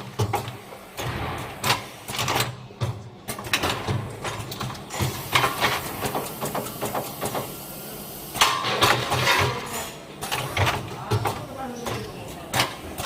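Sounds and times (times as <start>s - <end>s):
packing machine clicking and knocking: 0.0s - 7.5s.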